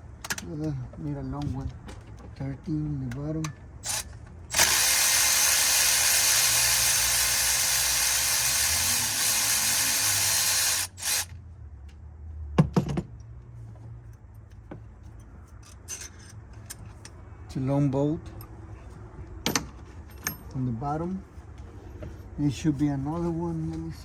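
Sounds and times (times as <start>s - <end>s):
cordless power tool spinning: 3.8s - 11.3s
metal clinks: 19.4s - 20.6s.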